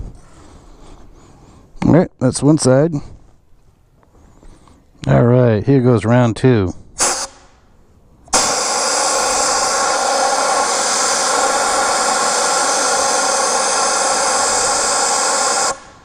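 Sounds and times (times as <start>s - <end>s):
air blower hissing and whining: 8.3s - 16.0s.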